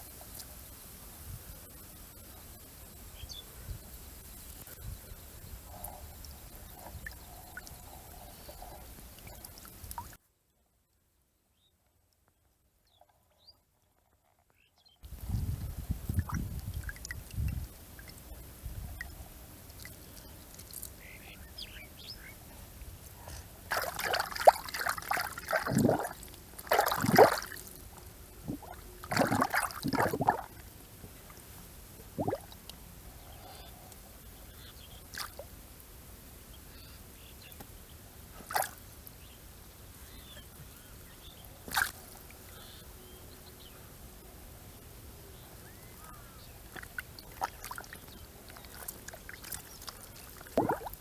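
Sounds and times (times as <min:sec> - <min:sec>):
water splashing and trickling: 0:06.6 - 0:10.2, 0:15.0 - 0:21.5, 0:23.6 - 0:32.8, 0:35.0 - 0:35.5, 0:38.4 - 0:38.8, 0:41.6 - 0:42.4, 0:46.6 - 0:51.0
water drips: 0:08.9 - 0:10.2, 0:15.6 - 0:21.1, 0:23.7 - 0:30.7, 0:32.0 - 0:32.8, 0:35.1 - 0:35.5, 0:46.7 - 0:51.0.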